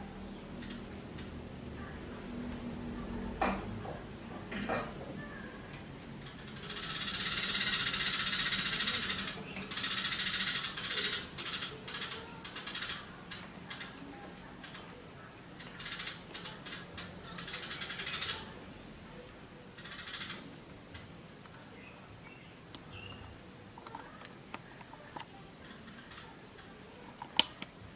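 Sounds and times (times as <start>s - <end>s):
sparrow buzzy chattering: 6.2s - 14.0s, 14.6s - 14.9s, 15.6s - 18.6s, 19.7s - 21.1s, 25.5s - 26.8s.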